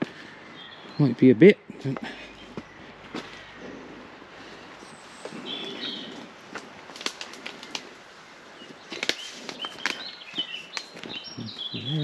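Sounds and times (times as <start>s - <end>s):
footsteps on boggy ground: 0.0s - 1.2s, 1.8s - 12.0s
small birds chirping: 0.0s - 12.0s
twigs snapping: 6.5s - 8.0s, 8.7s - 11.7s.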